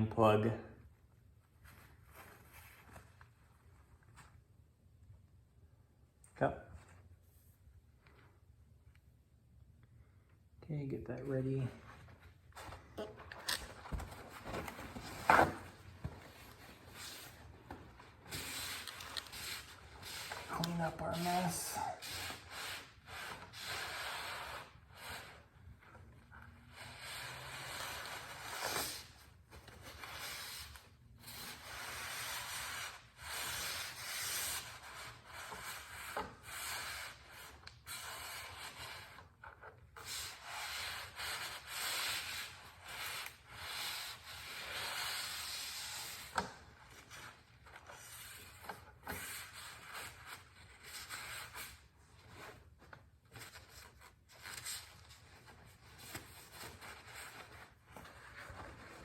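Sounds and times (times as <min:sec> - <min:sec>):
rag rubbing and wiping: 0:13.9 - 0:25.5.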